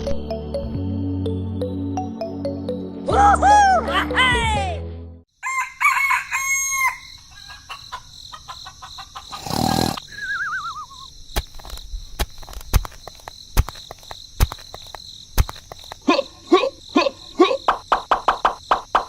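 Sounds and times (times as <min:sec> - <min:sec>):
music: 0:00.0 - 0:05.3
rooster crowing: 0:05.4 - 0:09.4
chickens clucking: 0:06.8 - 0:10.9.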